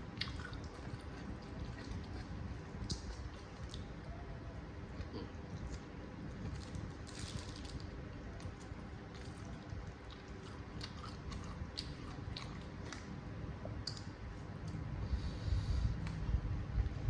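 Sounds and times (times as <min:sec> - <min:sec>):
close chewing of noodles: 0:00.0 - 0:04.2, 0:08.4 - 0:13.1.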